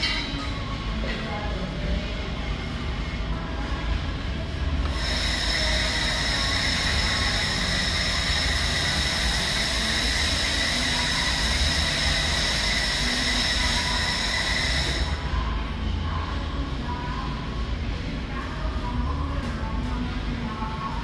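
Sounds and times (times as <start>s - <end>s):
high whine: 4.5s - 18.4s
laser welder hissing: 4.9s - 15.2s.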